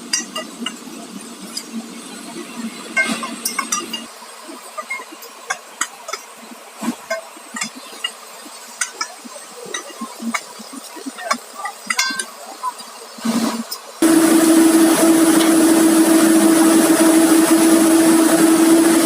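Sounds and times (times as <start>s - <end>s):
metal tools clinking on steel: 11.2s - 12.4s.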